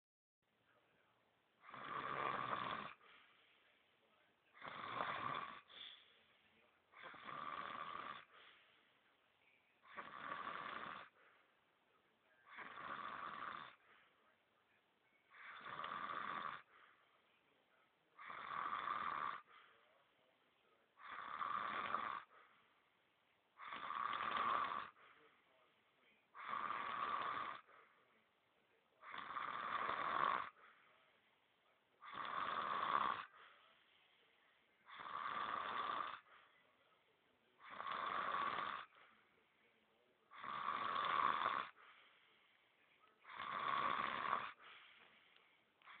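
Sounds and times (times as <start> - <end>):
man snoring heavily: 1.6 - 3.0, 4.6 - 5.7, 7.0 - 8.3, 9.8 - 11.2, 12.5 - 13.8, 15.3 - 16.7, 18.2 - 19.5, 21.0 - 22.3, 23.6 - 25.0, 26.4 - 27.7, 29.0 - 30.6, 32.0 - 33.3, 34.9 - 36.3, 37.6 - 38.9, 40.3 - 41.8, 43.2 - 44.6.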